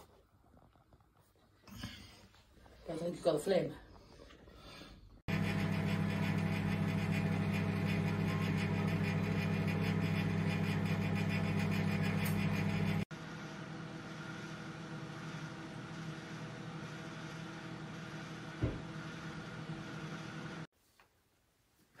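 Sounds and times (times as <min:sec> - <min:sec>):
microwave oven humming: 0:05.3 - 0:20.7.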